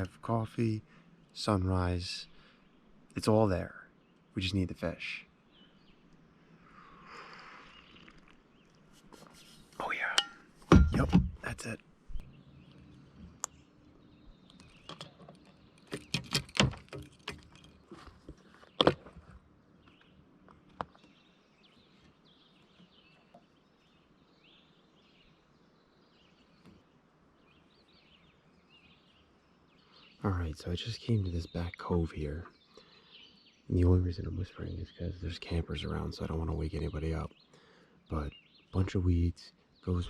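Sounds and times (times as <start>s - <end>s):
faint birds chirping: 0.0s - 40.0s
sharp knocks and clatters: 10.3s - 11.5s, 14.7s - 19.3s.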